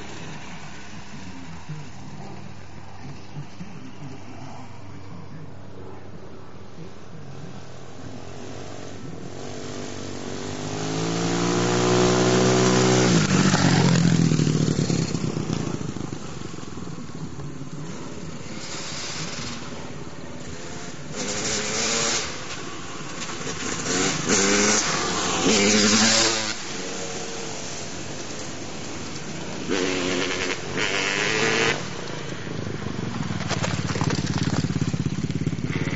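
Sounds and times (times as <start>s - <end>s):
motocross bike engine passing: 6.6s - 35.9s
motorbike engine revving bursts: 8.2s - 16.6s, 17.6s - 32.2s.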